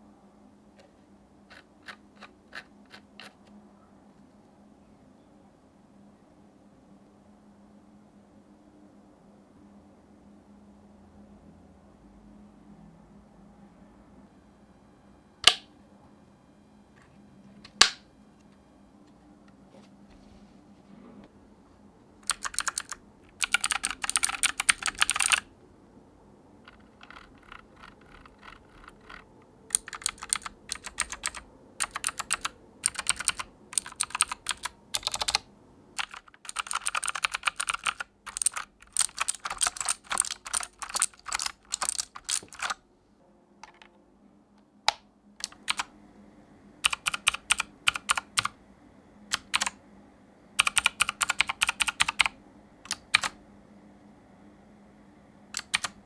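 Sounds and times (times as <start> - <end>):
clicky mechanical keyboard typing: 1.5 - 3.5, 22.2 - 25.5, 26.6 - 42.8, 44.9 - 45.9, 46.8 - 48.6, 49.3 - 49.8, 50.6 - 53.4, 55.5 - 56.0.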